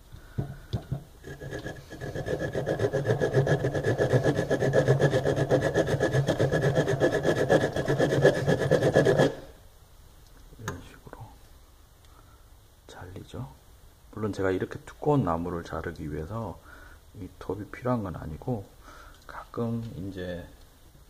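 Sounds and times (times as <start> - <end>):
small saw cutting wood: 1.2 - 9.5.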